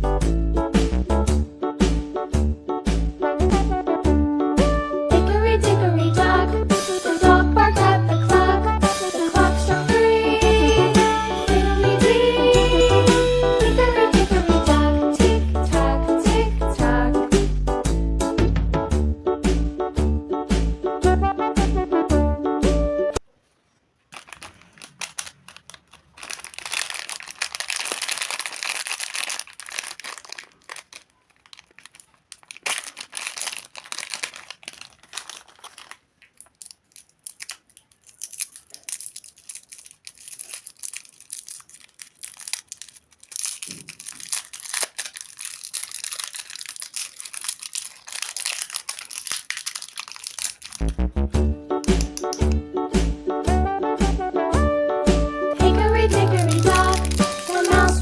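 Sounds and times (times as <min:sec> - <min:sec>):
plastic wrappers crinkling: 0:23.2 - 0:51.2, 0:51.8 - 0:52.6, 0:55.8 - 0:58.0.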